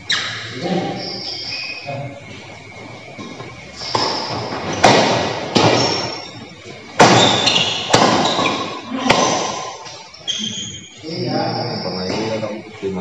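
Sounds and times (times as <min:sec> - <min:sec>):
racket striking shuttlecock: 0:03.8 - 0:06.2, 0:07.0 - 0:09.9.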